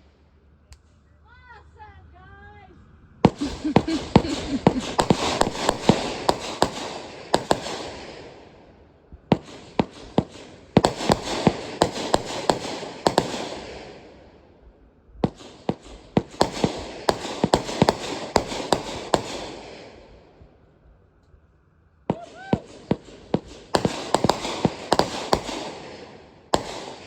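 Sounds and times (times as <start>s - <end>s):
fireworks cracking and banging: 3.2s - 14.5s, 15.2s - 20.5s, 22.0s - 27.0s.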